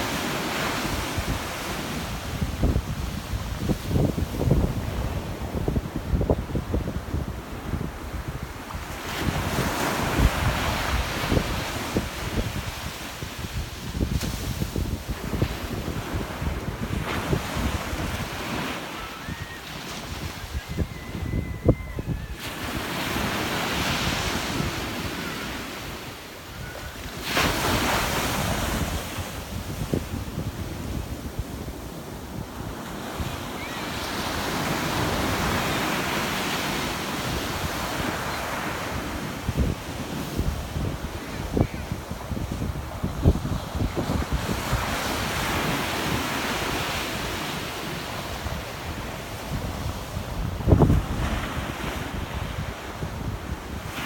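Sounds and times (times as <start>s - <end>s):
wind buffeting microphone: 0.0s - 36.5s, 37.2s - 47.4s, 48.2s - 54.0s.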